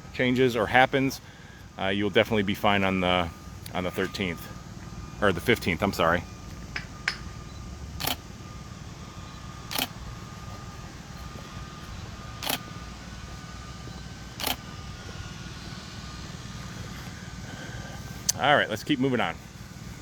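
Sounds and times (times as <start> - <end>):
sharp clicks: 6.5 - 7.3, 8.0 - 8.2, 9.7 - 10.0, 12.4 - 12.7, 14.4 - 14.6.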